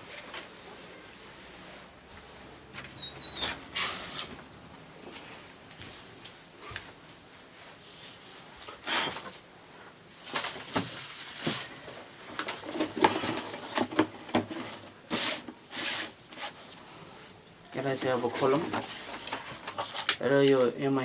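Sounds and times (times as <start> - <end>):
packaging rustling and scraping: 3.5 - 4.4, 8.6 - 9.5, 10.1 - 16.8, 17.9 - 20.2.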